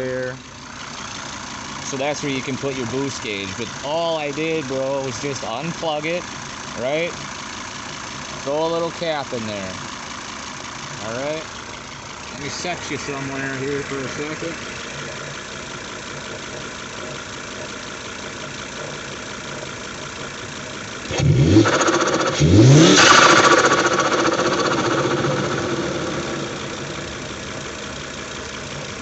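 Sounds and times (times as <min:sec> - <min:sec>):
car engine idling and revving: 0:00.0 - 0:29.0
rushing turbo flutter: 0:21.0 - 0:28.0.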